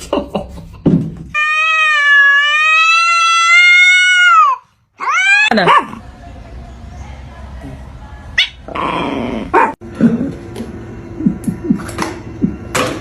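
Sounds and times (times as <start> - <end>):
pet howling: 1.4 - 5.5.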